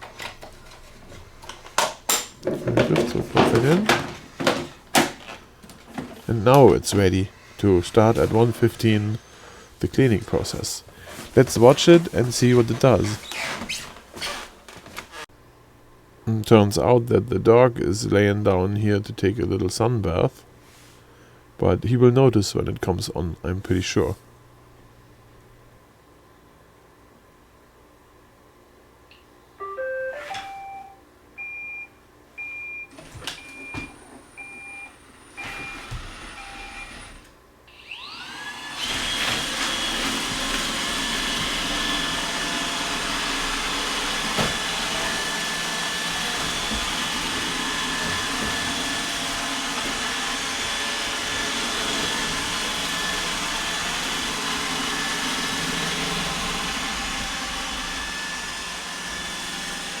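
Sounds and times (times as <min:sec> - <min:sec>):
robot vacuum beeps: 0:29.6 - 0:37.1
robot vacuum motor whine: 0:33.6 - 1:00.0.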